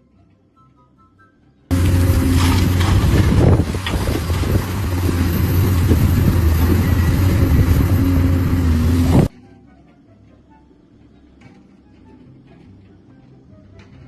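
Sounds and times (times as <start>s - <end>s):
engine running: 1.7s - 9.3s.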